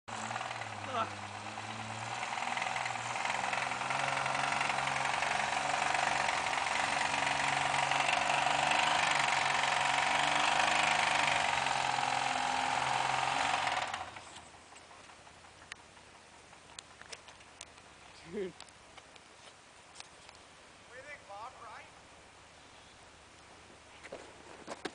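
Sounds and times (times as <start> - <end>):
knocking engine running: 0.0 - 16.6.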